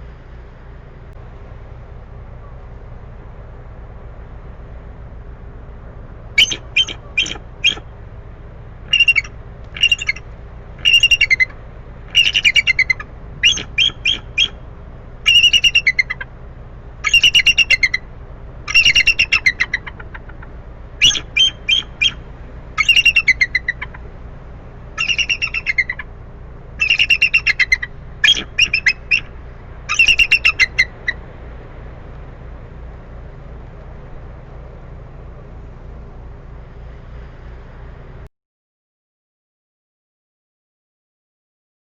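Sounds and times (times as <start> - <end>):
low background rumble: 0.0 - 38.3
eagle calling: 6.4 - 8.0, 8.8 - 16.4, 17.0 - 24.2, 24.9 - 31.2.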